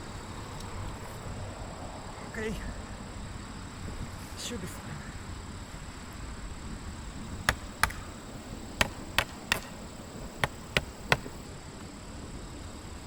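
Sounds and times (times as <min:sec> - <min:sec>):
sharp knocks: 0:07.4 - 0:11.4.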